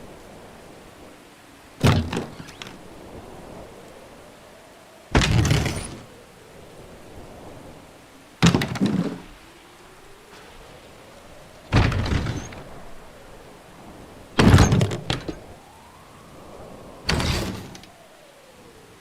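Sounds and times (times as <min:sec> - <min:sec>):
door hits: 0:01.8 - 0:02.7, 0:05.2 - 0:06.0, 0:08.4 - 0:09.2, 0:11.7 - 0:12.6, 0:14.4 - 0:15.4.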